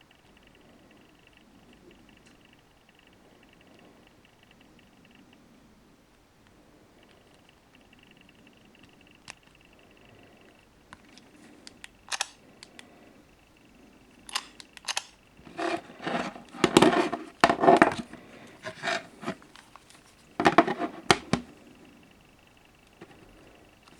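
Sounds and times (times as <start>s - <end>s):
handling clicks and rustling: 14.2s - 23.9s
scraping and knocking: 15.5s - 19.4s, 20.4s - 21.5s.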